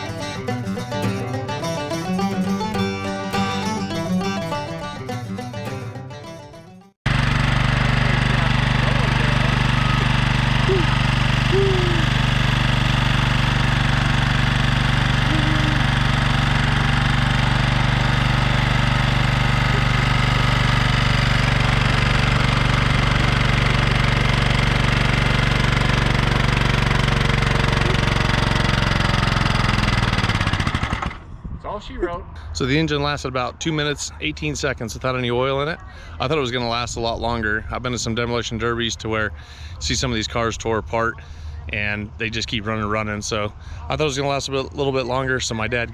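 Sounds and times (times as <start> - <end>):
lawn tractor engine running: 0.0 - 31.2.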